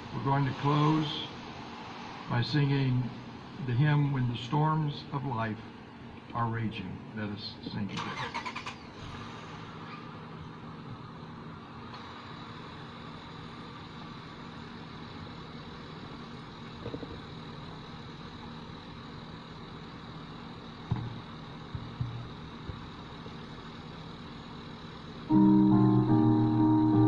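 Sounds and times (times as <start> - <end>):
car engines idling: 0.0 - 27.0
short knocks: 20.9 - 22.9.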